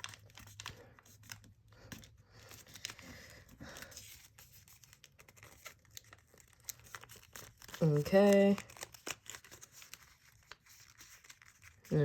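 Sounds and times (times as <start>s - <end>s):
paper crinkling: 0.0s - 12.0s.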